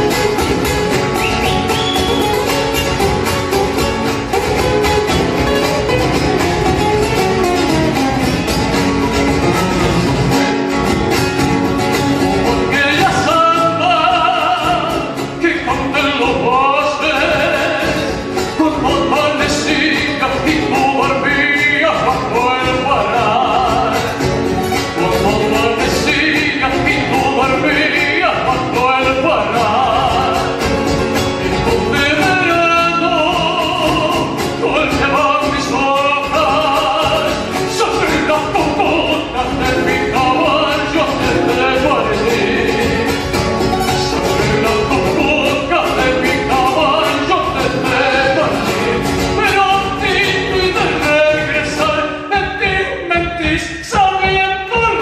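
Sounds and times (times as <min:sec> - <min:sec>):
instrumental accompaniment: 0:00.0 - 0:55.0
person singing with vibrato: 0:11.6 - 0:55.0.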